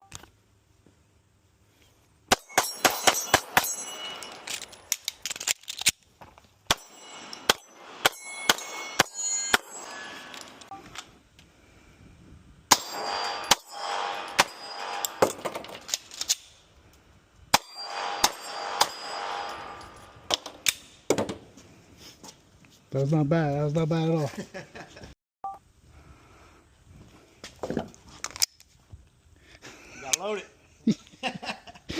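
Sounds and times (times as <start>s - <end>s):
metallic ring: 2.3s - 5.0s, 6.7s - 10.8s, 12.7s - 15.9s, 17.6s - 20.4s.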